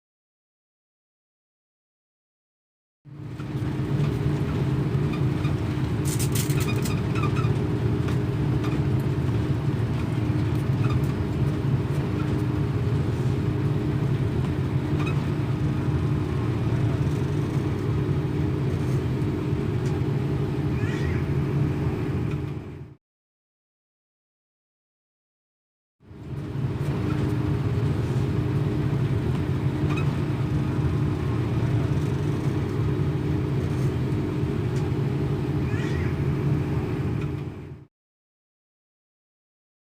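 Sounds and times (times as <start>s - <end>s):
airliner engine rumble: 3.1s - 23.0s, 26.0s - 37.9s
constant hum: 3.1s - 23.0s, 26.1s - 37.9s.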